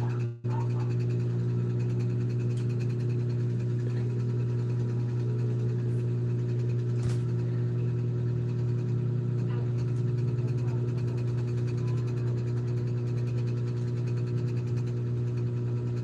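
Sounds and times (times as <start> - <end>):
low machine hum: 0.0 - 16.0.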